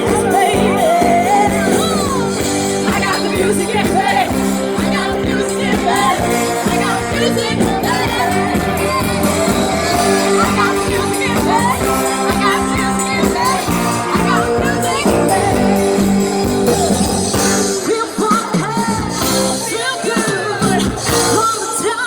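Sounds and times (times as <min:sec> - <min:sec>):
crowd shouts: 0:00.0 - 0:17.2
steady drum beat: 0:00.0 - 0:21.8
lead singer singing: 0:00.0 - 0:22.0
live band playing pop-rock: 0:00.0 - 0:22.0.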